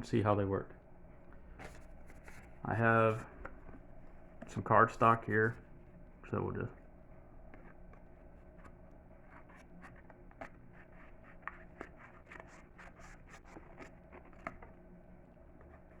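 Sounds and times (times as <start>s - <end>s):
paper rustling: 1.4s - 3.6s, 8.6s - 14.7s.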